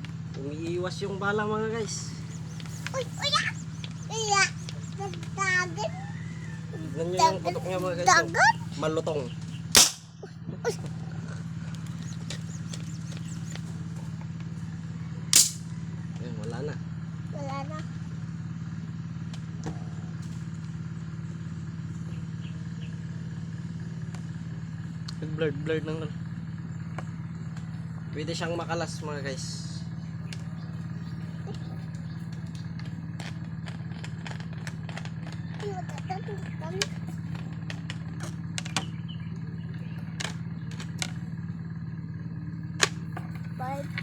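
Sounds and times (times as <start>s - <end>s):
small engine idling: 0.0s - 44.0s
sharp clicks and knocks: 32.3s - 39.0s.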